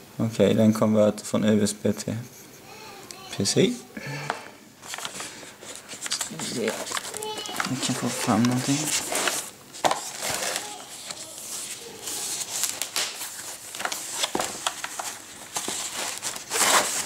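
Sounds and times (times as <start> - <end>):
packaging rustling: 4.8 - 17.0.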